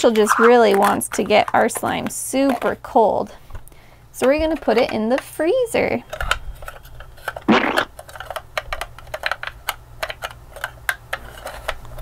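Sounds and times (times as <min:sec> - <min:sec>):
brief loud noisy sound: 0:07.5 - 0:07.9.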